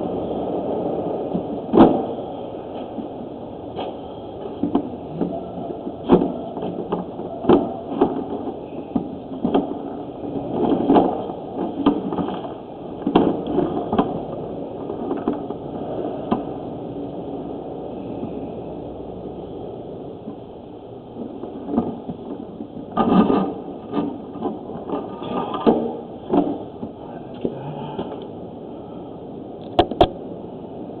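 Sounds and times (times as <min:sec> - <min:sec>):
steady background noise: 0:00.0 - 0:31.0
knocks and scrapes: 0:03.7 - 0:16.5, 0:21.2 - 0:28.2.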